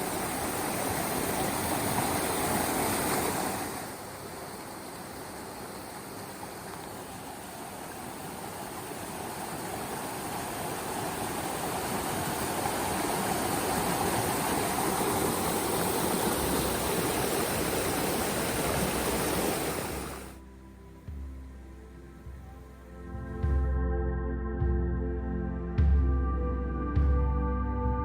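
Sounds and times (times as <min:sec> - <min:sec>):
stream water rushing: 0:00.0 - 0:20.4.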